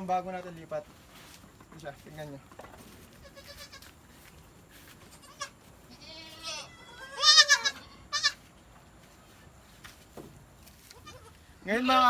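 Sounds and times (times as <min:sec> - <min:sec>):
goat kids bleating: 0:03.1 - 0:04.0, 0:05.0 - 0:08.5, 0:10.8 - 0:12.0.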